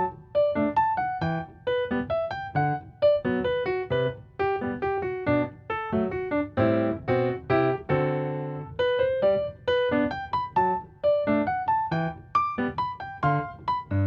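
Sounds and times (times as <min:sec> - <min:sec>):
gentle piano music: 0:00.0 - 0:14.0.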